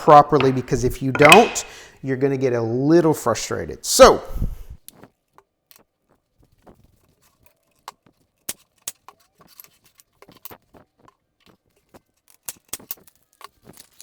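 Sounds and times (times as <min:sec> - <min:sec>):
wood boards and tools knocking: 0:00.3 - 0:01.7.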